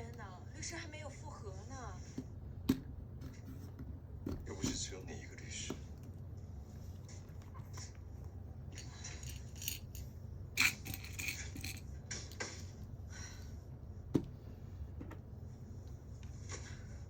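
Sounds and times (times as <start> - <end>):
low steady hum: 0.0 - 17.0
small hard objects clinking: 8.8 - 11.8.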